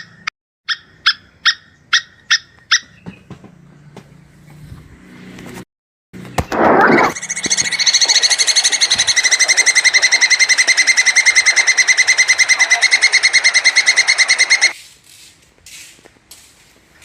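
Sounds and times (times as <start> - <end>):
squirrel chattering trill: 6.9 - 14.8.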